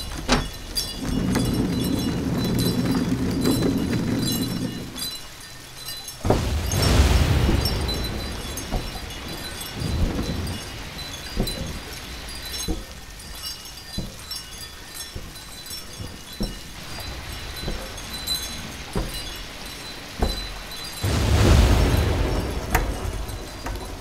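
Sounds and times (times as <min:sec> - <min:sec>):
sharp crack: 0:06.2 - 0:10.7, 0:21.0 - 0:24.0
low rumble: 0:06.2 - 0:12.3, 0:21.0 - 0:24.0
loud rushing swell: 0:06.3 - 0:10.0, 0:21.0 - 0:23.6.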